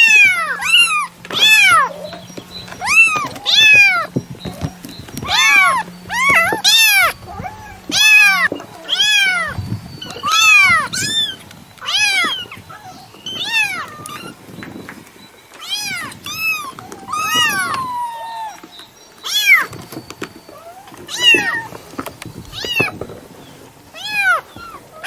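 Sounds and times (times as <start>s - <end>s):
cat meowing: 0.0s - 2.1s, 2.8s - 4.1s, 5.2s - 14.4s, 15.6s - 19.7s, 20.6s - 21.7s, 24.0s - 24.8s.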